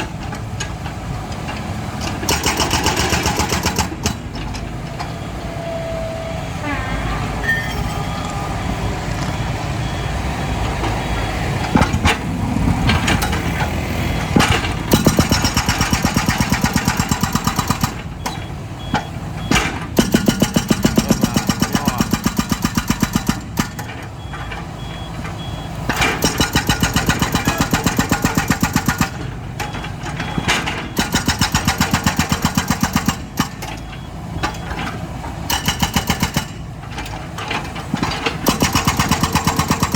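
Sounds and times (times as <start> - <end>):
excavator diesel engine revving: 0.0 - 39.9
sharp metal knocks: 2.0 - 4.7, 11.6 - 24.0, 25.9 - 33.8, 35.5 - 39.9
high beeping: 7.0 - 11.5.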